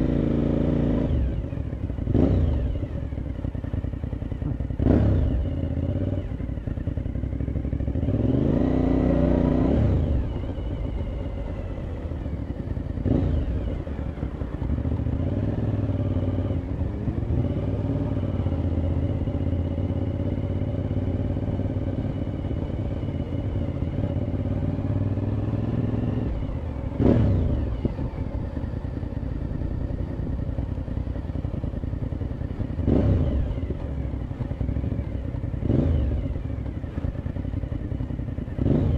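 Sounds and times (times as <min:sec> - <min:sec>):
motorcycle engine revving: 0:00.0 - 0:38.9.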